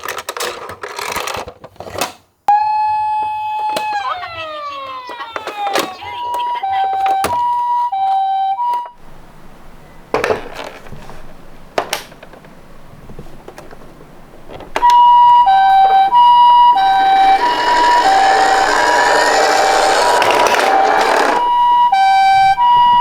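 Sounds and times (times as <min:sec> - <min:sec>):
toy siren two-tone: 0:02.5 - 0:09.0, 0:14.8 - 0:23.0
clicks: 0:03.6 - 0:09.0.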